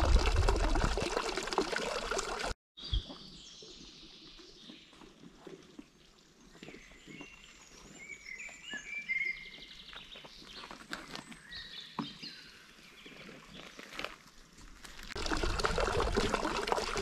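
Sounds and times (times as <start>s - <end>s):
songbirds singing: 2.8s - 14.0s.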